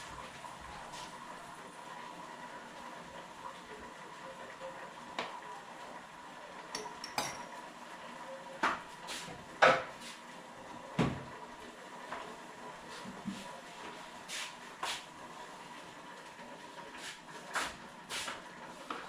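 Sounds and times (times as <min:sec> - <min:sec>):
dishes and cutlery clinking: 0:06.7 - 0:07.6.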